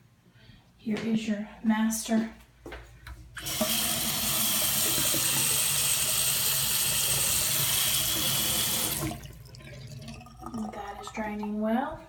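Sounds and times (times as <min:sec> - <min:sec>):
tap water running into drain: 0:03.4 - 0:11.6.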